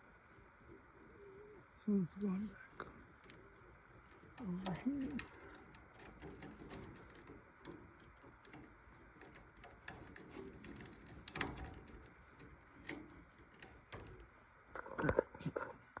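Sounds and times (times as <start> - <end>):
faint clicks and knocks of tools: 2.5 - 16.0.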